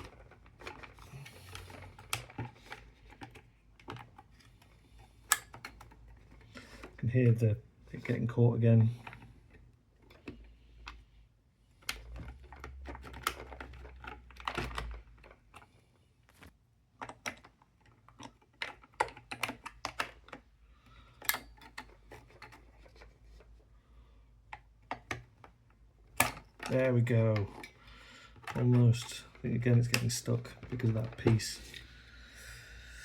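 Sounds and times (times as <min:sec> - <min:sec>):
puzzle box clicks and rattles: 0:24.9 - 0:31.8.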